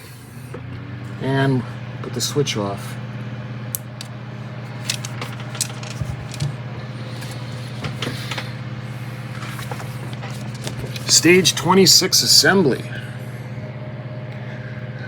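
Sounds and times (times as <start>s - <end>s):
low electrical hum: 0.0s - 15.0s
plastic parts and papers handled: 3.8s - 4.1s, 4.7s - 8.5s, 9.2s - 11.7s.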